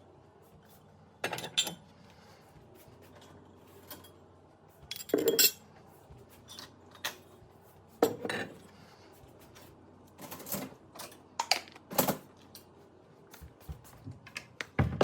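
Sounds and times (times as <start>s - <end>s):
dishes and utensils clattering: 1.2s - 1.8s, 4.9s - 5.6s, 8.0s - 8.6s.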